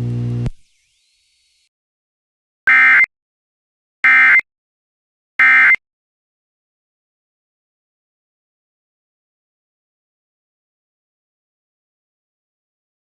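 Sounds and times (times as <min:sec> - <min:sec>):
two-tone digital data squawk: 0:02.7 - 0:03.1, 0:04.1 - 0:04.4, 0:05.4 - 0:05.8.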